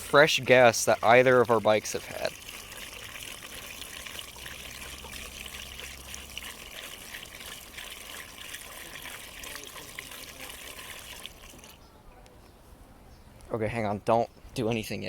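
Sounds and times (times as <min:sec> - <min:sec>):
fuel pouring through a funnel: 0:00.0 - 0:11.8.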